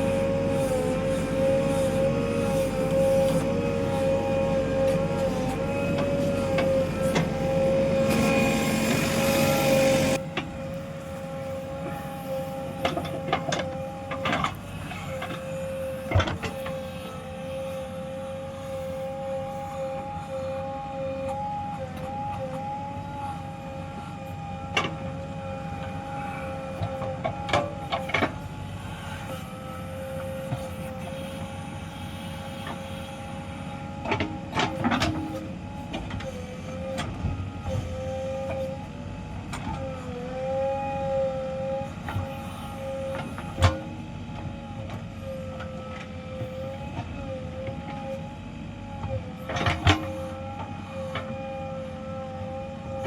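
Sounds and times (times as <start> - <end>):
diesel engine whining under load: 0.0 - 53.0.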